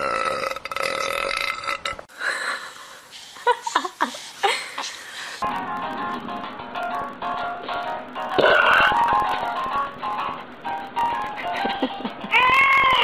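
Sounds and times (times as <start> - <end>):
music: 5.4 - 13.0
child burping: 8.4 - 9.0.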